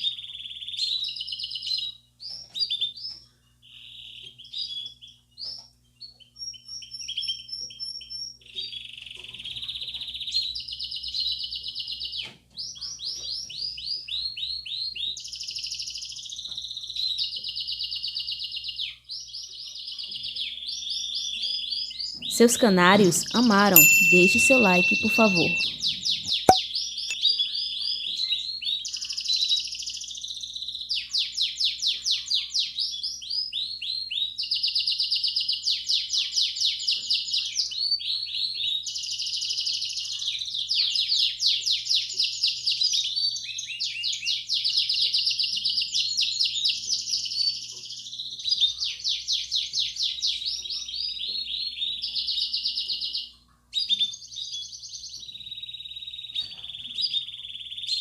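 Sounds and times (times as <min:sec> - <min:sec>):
canary singing rapid trills: 0:14.0 - 0:26.6.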